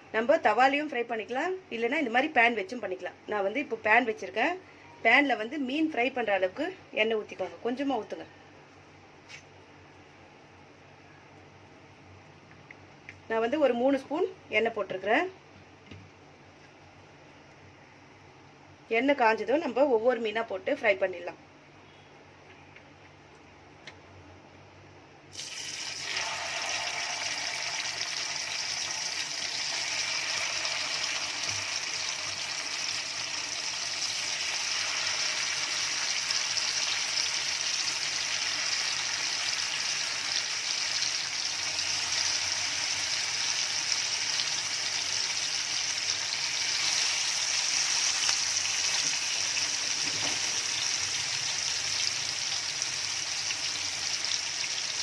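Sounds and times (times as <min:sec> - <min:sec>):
fish sizzling in hot oil: 0:25.3 - 0:55.0.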